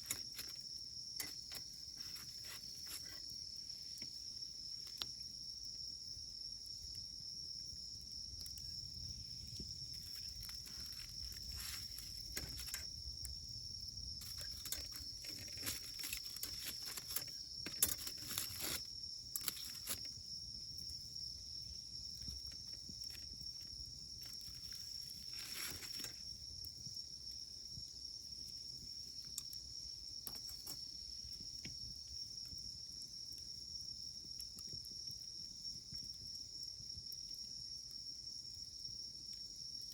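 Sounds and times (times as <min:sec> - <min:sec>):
campfire crackling and popping: 0:00.0 - 0:26.8
insects trilling: 0:00.0 - 0:39.9.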